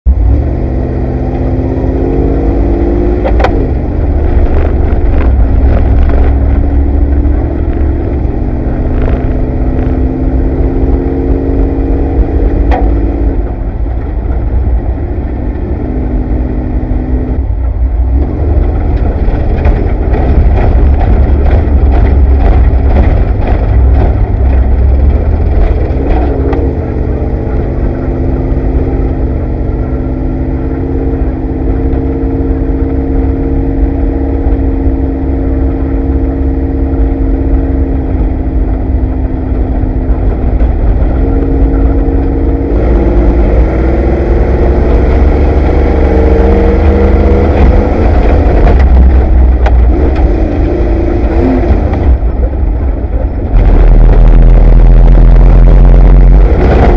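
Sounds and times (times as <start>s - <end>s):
heavy low rumble: 0.0s - 56.9s
truck engine running high: 0.1s - 56.9s
truck rattling: 18.5s - 27.9s.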